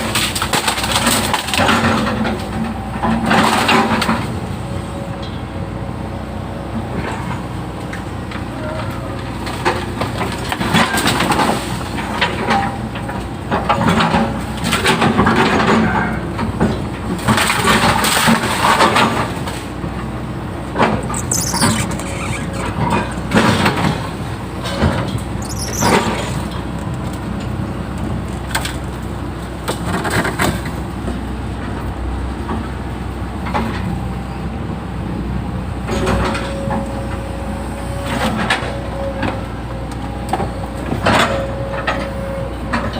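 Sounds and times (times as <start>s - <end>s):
excavator engine running: 0.0s - 42.9s
bucket scraping and rattling: 20.8s - 24.8s
high falling squeals: 21.0s - 23.3s, 25.4s - 26.3s.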